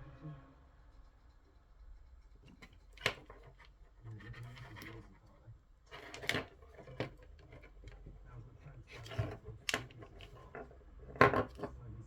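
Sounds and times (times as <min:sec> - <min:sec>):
parts rubbing: 0:02.5 - 0:05.1, 0:05.9 - 0:08.1, 0:08.8 - 0:11.8.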